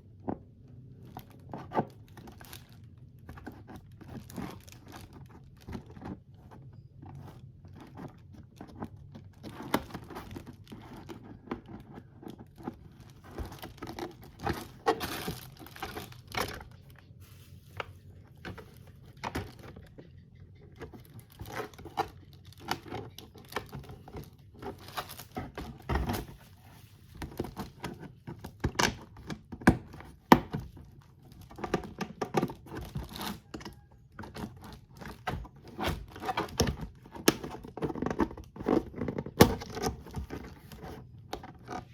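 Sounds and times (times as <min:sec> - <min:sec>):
packaging crinkling and tearing: 0:07.7 - 0:19.6, 0:21.2 - 0:29.3.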